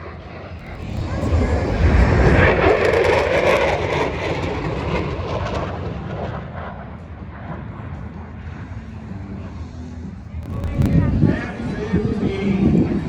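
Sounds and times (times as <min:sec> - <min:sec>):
aircraft engine passing low: 0:00.0 - 0:13.0.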